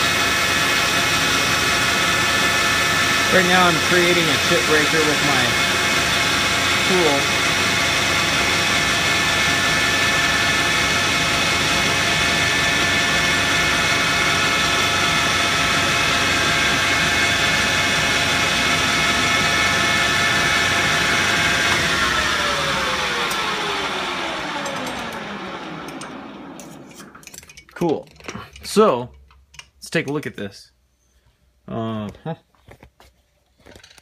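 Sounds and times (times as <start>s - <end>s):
metal lathe whining: 0.0s - 27.4s
lathe spindle coasting down: 0.5s - 27.2s.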